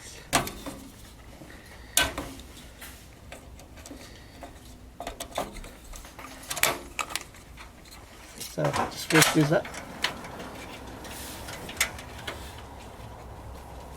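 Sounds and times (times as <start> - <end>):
computer parts clicking and knocking: 1.9 - 12.4.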